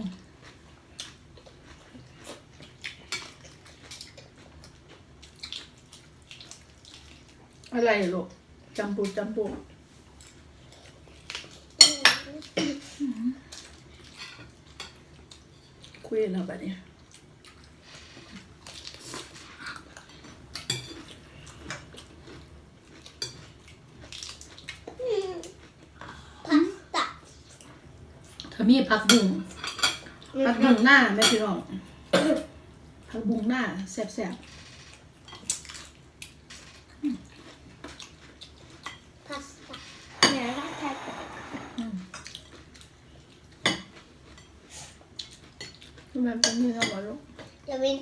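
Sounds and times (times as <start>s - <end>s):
cutlery and dishes clinking: 11.8s - 12.3s, 20.6s - 21.2s, 29.0s - 30.1s, 30.7s - 31.6s
cutlery clicking on plates: 11.8s - 12.3s.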